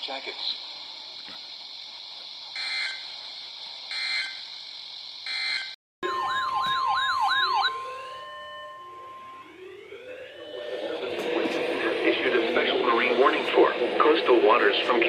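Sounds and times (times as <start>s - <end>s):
siren yelping and wailing: 3.9s - 4.4s, 5.3s - 13.4s
digital data tone bursts: 5.3s - 13.0s
steady alert tone: 6.0s - 13.1s.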